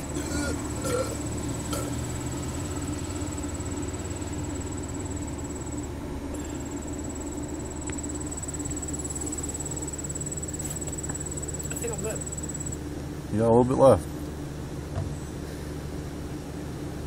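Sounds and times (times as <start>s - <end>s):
low hum: 0.0s - 13.3s
insect trilling: 3.4s - 12.8s.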